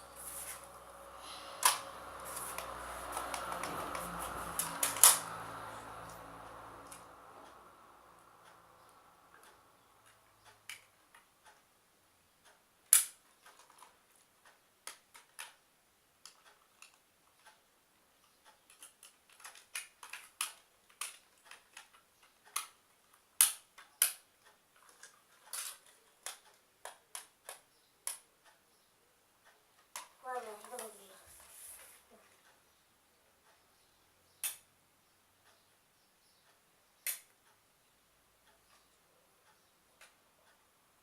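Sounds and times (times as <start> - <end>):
small hard parts clicking: 1.5 - 5.4, 12.4 - 28.2.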